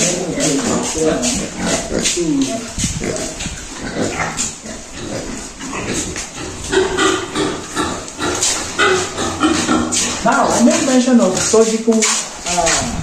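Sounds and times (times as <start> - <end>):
pigs grunting: 0.0 - 13.0.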